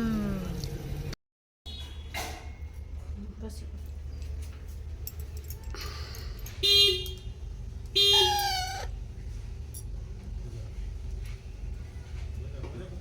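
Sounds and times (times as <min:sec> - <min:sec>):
parrot harsh calls: 0:08.0 - 0:09.0.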